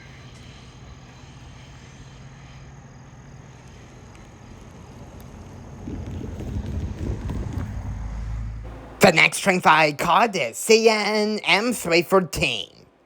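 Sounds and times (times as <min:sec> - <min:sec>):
faint rumble of passing train: 0:00.0 - 0:09.3
outdoor background noise: 0:00.0 - 0:13.0.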